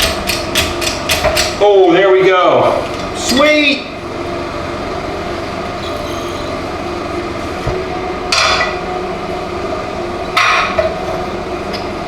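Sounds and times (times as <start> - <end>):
steady hum: 3.2 - 10.4.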